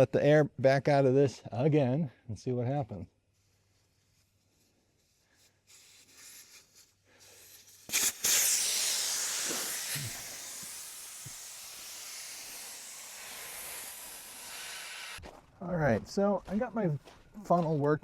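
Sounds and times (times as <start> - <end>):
compressed air hissing from tire valve: 5.6 - 15.2.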